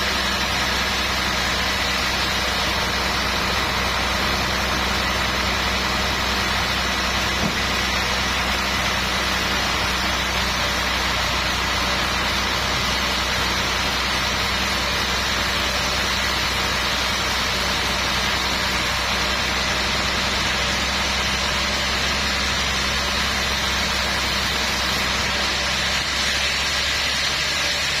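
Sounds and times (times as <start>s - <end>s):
sawmill machinery drone: 0.0s - 28.0s.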